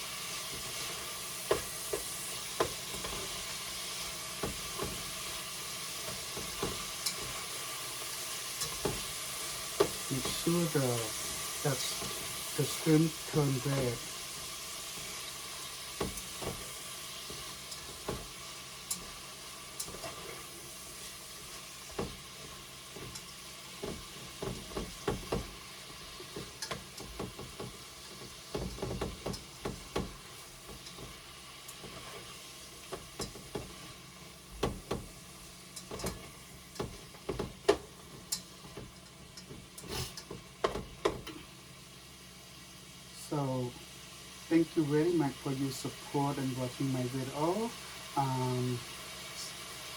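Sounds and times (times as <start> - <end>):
food sizzling in oil: 0.0 - 49.9
utensil tapping and scraping pan: 0.3 - 12.5, 14.4 - 35.2, 35.8 - 41.5.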